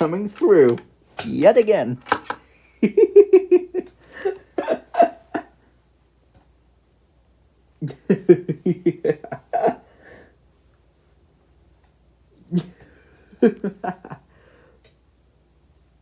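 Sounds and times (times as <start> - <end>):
person laughing: 2.7 - 5.6, 7.8 - 10.0, 12.4 - 14.3.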